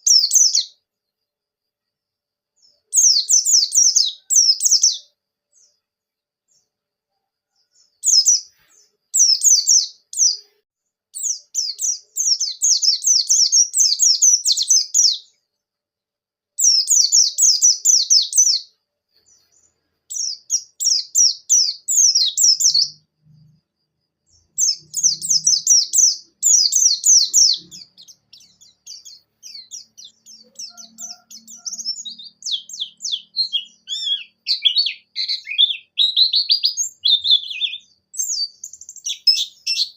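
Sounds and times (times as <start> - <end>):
bird twittering: 24.5 - 39.9.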